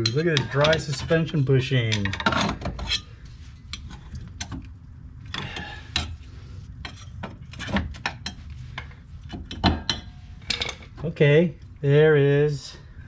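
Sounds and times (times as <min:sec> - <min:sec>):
metal tools clinking and knocking: 0:00.0 - 0:03.1, 0:06.8 - 0:11.1.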